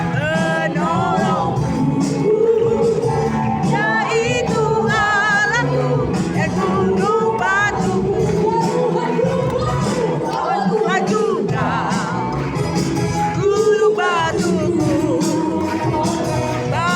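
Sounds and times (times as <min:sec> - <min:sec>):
person singing a song: 0:00.0 - 0:12.5, 0:13.2 - 0:16.9
steady musical accompaniment: 0:00.0 - 0:16.9.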